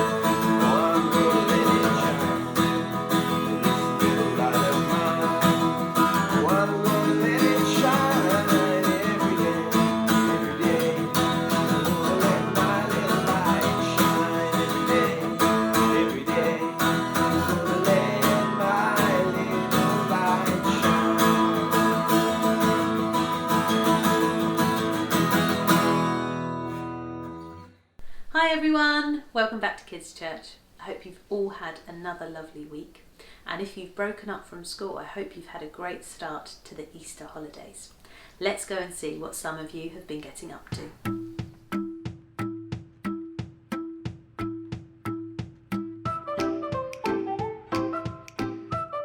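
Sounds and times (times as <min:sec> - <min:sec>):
strummed acoustic guitar: 0:00.0 - 0:27.7
melody line: 0:42.4 - 0:49.0.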